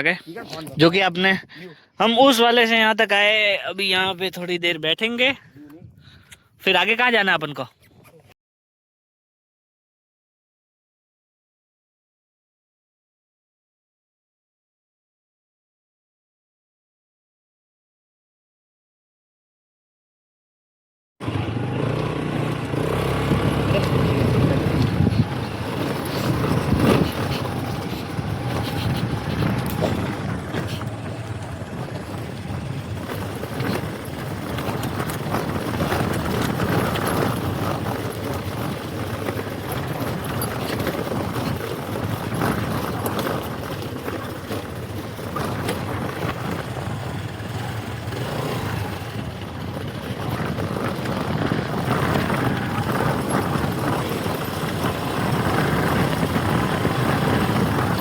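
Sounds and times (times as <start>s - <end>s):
motor scooter engine running: 21.2s - 58.0s
road noise: 21.2s - 58.0s.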